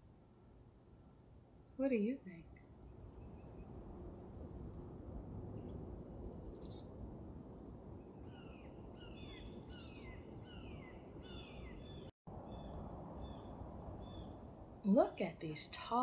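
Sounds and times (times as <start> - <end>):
low outdoor rumble: 0.4 - 16.0
songbird chirping: 1.6 - 3.9, 5.2 - 7.4, 8.0 - 15.8.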